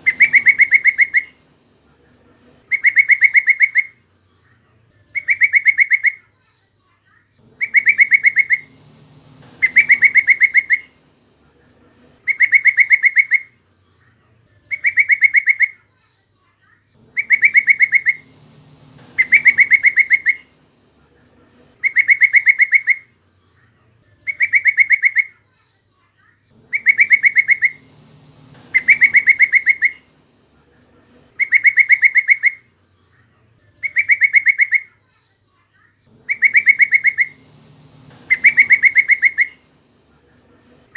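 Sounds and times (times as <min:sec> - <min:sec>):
bulbul chattering call: 0:00.0 - 0:04.0, 0:05.2 - 0:06.2, 0:07.4 - 0:13.6, 0:14.7 - 0:15.8, 0:17.0 - 0:23.2, 0:24.3 - 0:25.4, 0:26.6 - 0:32.8, 0:33.8 - 0:34.9, 0:36.1 - 0:40.9.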